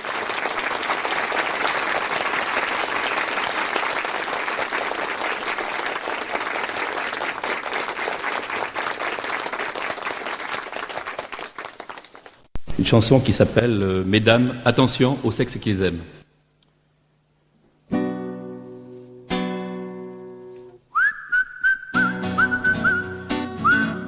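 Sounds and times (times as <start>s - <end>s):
audience applauding: 0.0s - 12.5s.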